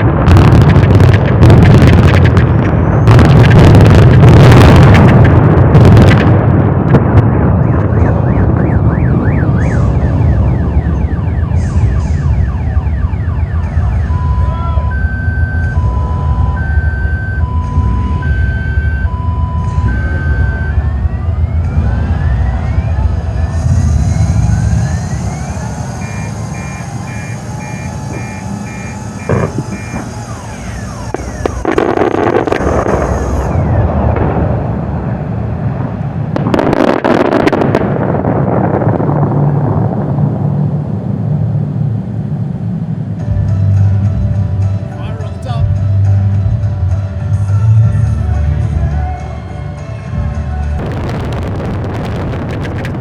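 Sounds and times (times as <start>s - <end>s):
explosive charge cracks: 0.0s - 10.0s, 26.0s - 35.0s, 35.8s - 40.7s, 50.8s - 53.0s
steady low rumble: 0.0s - 49.5s, 50.1s - 53.0s
two-tone warning signal: 7.7s - 33.9s
rapid beeps: 25.0s - 33.4s.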